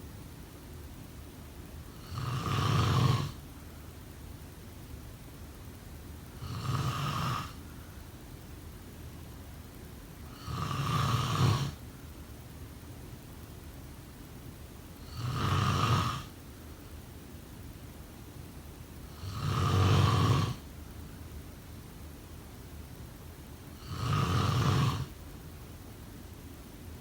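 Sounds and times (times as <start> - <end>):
person snoring: 2.0 - 3.4, 6.4 - 7.6, 10.3 - 11.8, 15.1 - 16.3, 19.1 - 20.6, 23.8 - 25.1.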